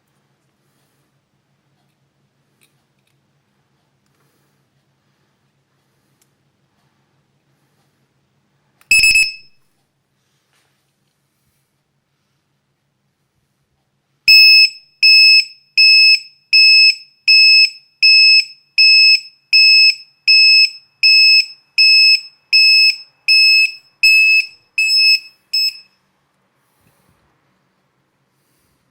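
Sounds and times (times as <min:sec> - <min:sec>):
shrill alarm beeps: 0:08.9 - 0:09.6, 0:14.3 - 0:26.0.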